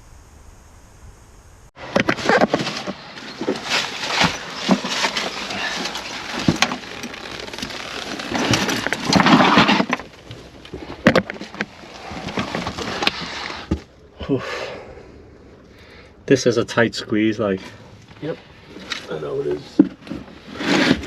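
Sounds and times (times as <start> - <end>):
person clambering over rock: 1.8 - 13.9
clothing and gear rubbing: 2.3 - 9.8.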